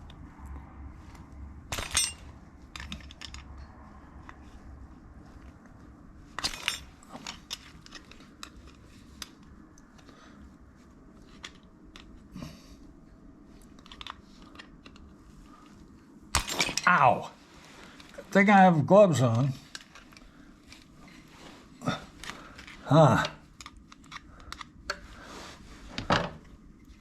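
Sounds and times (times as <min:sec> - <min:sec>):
metallic clinks and knocks of tools: 0:01.7 - 0:04.4, 0:06.4 - 0:09.3.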